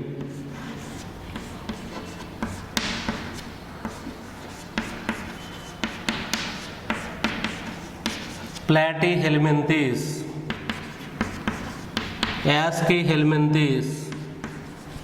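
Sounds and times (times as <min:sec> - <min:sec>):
chalk scraping: 0:00.3 - 0:08.7, 0:10.5 - 0:12.5, 0:14.2 - 0:15.0
chalk tapping on blackboard: 0:00.6 - 0:08.7, 0:10.5 - 0:12.5, 0:14.1 - 0:15.0.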